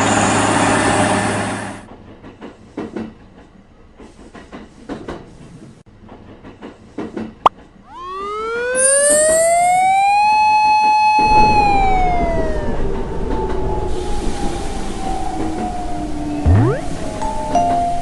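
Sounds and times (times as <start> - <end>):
passing train rumble: 0.0 - 4.0, 11.3 - 18.0
pitched wail: 7.9 - 17.3.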